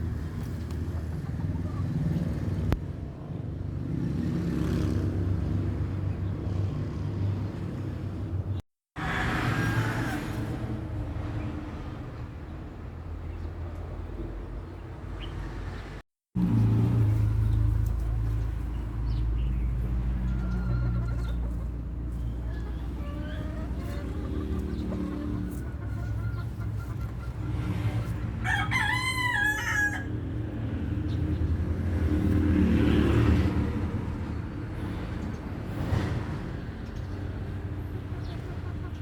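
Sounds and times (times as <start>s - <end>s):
rooster crowing: 9.0s - 10.8s, 28.4s - 30.3s.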